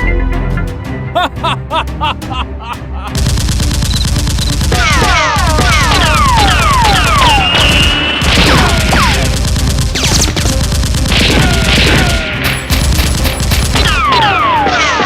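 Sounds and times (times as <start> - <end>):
background music with low beat: 0.0 - 15.0
rapid-fire gunshot effects: 3.2 - 15.0
falling whistle-like zaps: 6.0 - 8.2.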